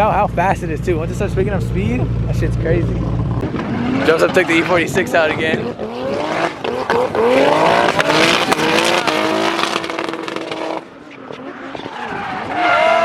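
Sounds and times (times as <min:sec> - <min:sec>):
car engine revving hard: 0:02.8 - 0:13.0.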